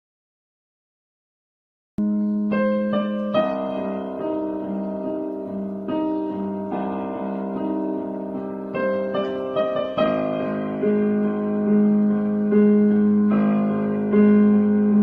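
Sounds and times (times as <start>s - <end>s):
gentle piano chords: 2.0s - 15.0s.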